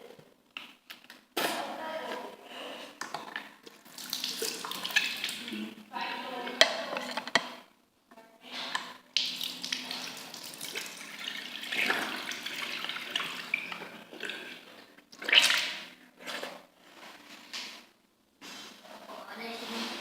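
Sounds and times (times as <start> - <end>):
water running and splashing: 3.1 - 6.1, 9.1 - 16.0.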